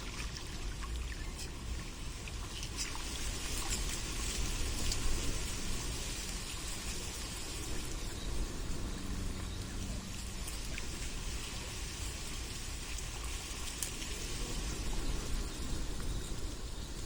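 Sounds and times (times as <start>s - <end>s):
small ticks: 0.0s - 17.0s
water hiss: 0.0s - 17.0s
low rumble: 4.0s - 17.0s.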